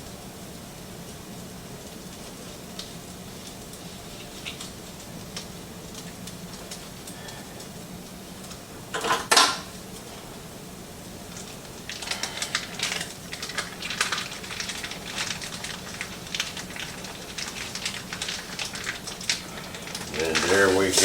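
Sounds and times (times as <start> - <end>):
utensils and cookware clinking: 9.0 - 9.7.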